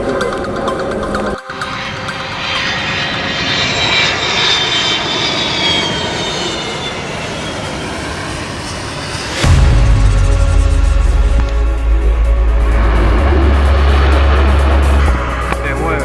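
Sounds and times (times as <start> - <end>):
airplane flying past: 0.0 - 16.0.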